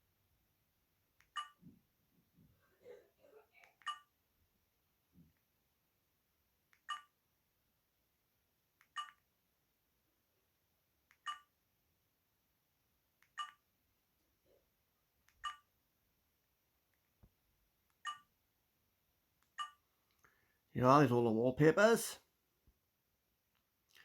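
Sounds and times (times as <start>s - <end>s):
phone keypad beeps: 1.3s - 1.6s, 3.8s - 4.1s, 6.8s - 7.1s, 8.9s - 9.2s, 11.2s - 11.5s, 13.3s - 13.6s, 15.4s - 15.7s, 18.0s - 18.3s, 19.6s - 19.8s.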